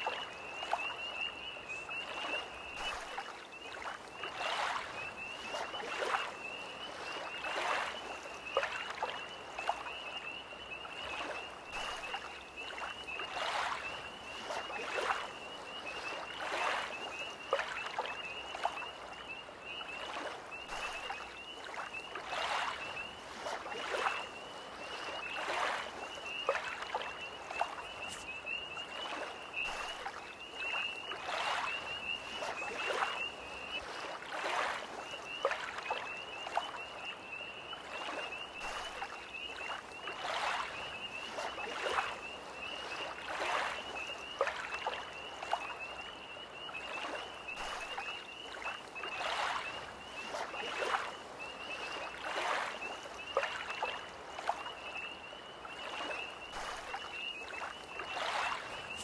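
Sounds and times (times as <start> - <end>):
lake waves lapping at shore: 0.0 - 59.0
tree frogs trilling: 0.0 - 59.0.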